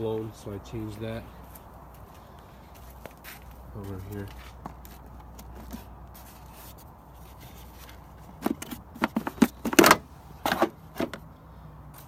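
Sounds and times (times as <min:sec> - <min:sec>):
plastic fuse box clicking and rattling: 0:08.2 - 0:11.2.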